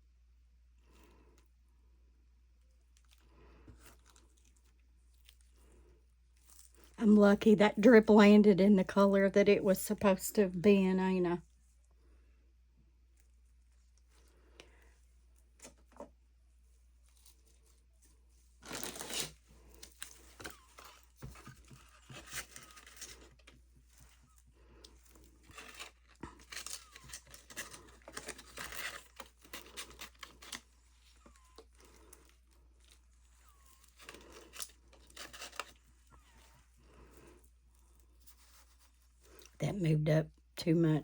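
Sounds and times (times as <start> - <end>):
crinkling and tearing handling noise: 2.6 - 7.0, 13.0 - 39.6.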